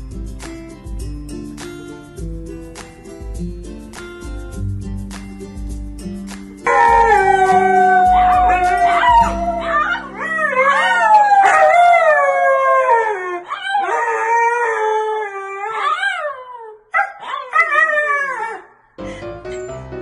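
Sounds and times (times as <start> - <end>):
dog howling: 6.7 - 18.7.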